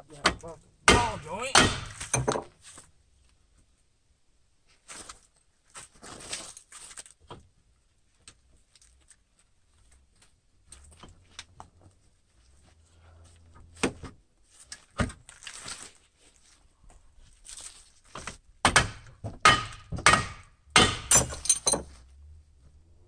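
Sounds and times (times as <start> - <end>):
sharp metal knocks: 0.2 - 2.5, 18.6 - 21.9
hand tools clinking on metal: 21.1 - 21.9.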